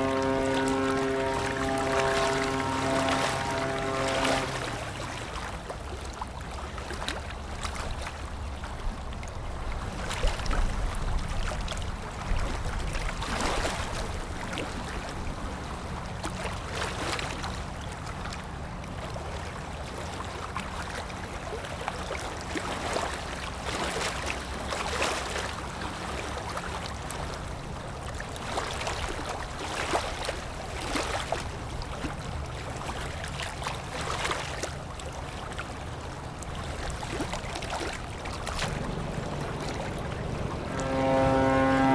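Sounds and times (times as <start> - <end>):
ship engine drone: 0.0 - 6.8, 35.8 - 41.9
water rushing and splashing: 0.0 - 17.2, 22.3 - 41.9.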